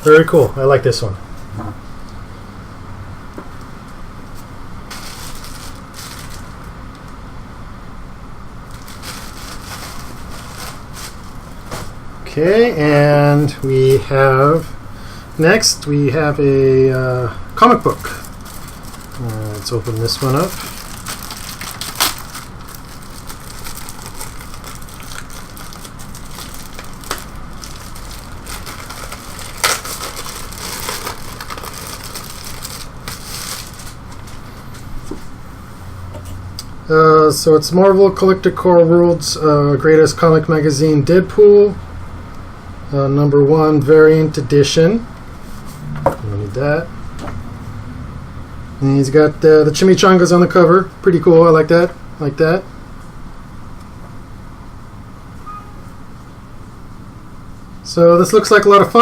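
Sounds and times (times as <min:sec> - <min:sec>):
steady low hum: 0:00.0 - 0:59.0
packaging rustling and crinkling: 0:04.9 - 0:06.8, 0:08.7 - 0:12.0, 0:17.6 - 0:34.6.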